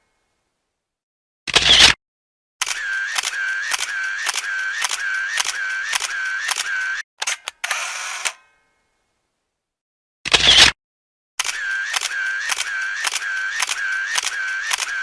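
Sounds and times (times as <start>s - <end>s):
camera shutter releases: 2.6s - 8.4s, 11.4s - 15.0s
quick clicks: 2.6s - 8.4s, 11.4s - 15.0s.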